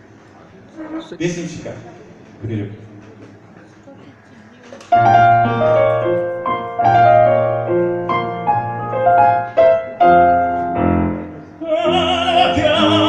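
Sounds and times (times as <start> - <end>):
slow piano chords: 4.9 - 13.0.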